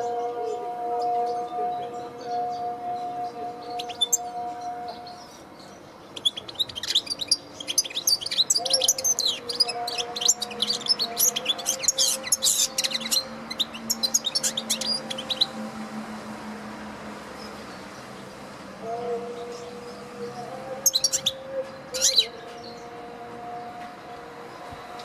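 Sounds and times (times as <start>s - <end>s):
finch singing fast twitter: 5.0s - 15.6s, 19.4s - 22.9s.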